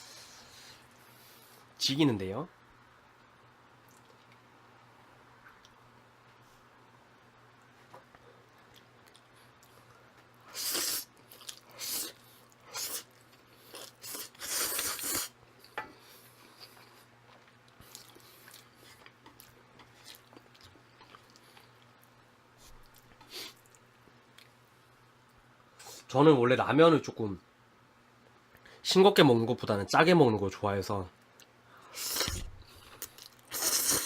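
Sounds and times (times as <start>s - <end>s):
person chewing: 3.8s - 4.4s, 8.4s - 24.5s, 32.0s - 34.0s
person slurping noodles: 10.5s - 11.1s, 11.8s - 13.1s, 13.7s - 15.4s, 31.9s - 32.5s, 33.5s - 34.0s.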